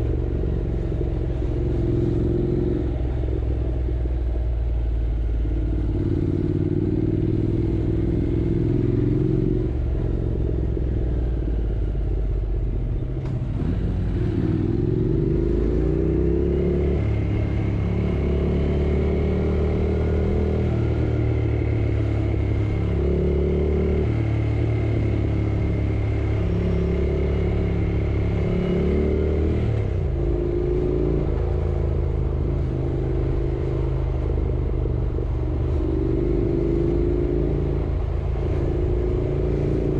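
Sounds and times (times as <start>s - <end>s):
motorcycle engine revving: 13.2s - 39.9s.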